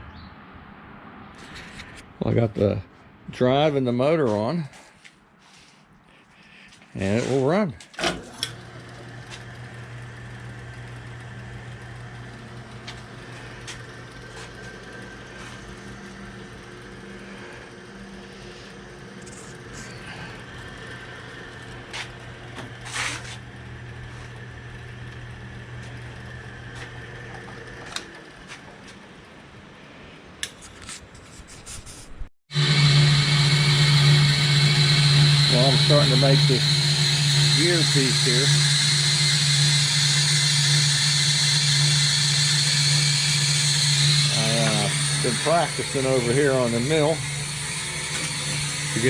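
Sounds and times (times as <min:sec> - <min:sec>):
milling machine motor humming: 0:07.0 - 0:29.2, 0:32.5 - 0:49.0.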